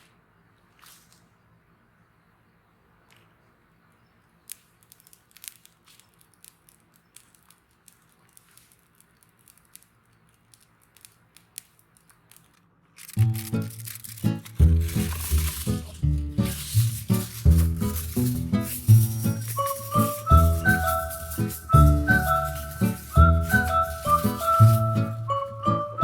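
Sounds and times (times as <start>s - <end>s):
small sharp crackles and snaps: 3.0s - 25.2s
background music: 13.4s - 26.0s.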